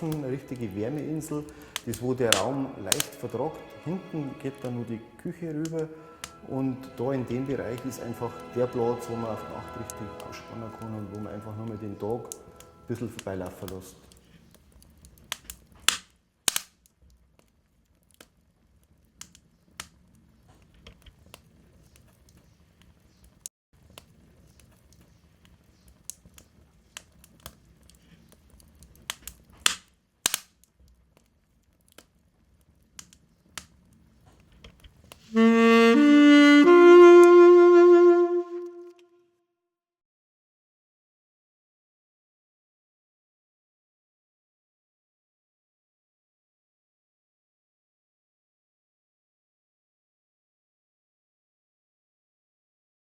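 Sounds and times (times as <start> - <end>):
wood fire crackling: 0.0 - 38.1
rising musical jingle: 2.7 - 12.9, 35.4 - 39.0.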